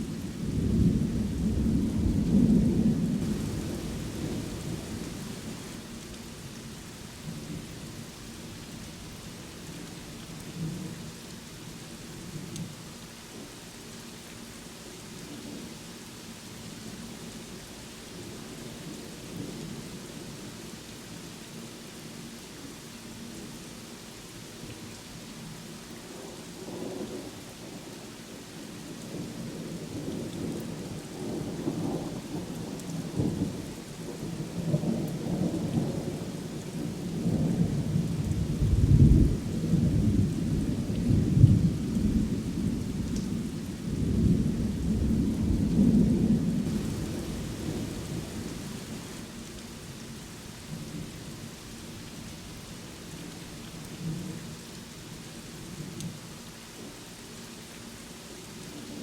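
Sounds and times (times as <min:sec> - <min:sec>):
steady rainfall: 0:00.0 - 0:59.0
thunder rumbling: 0:00.5 - 0:05.8, 0:43.9 - 0:49.3.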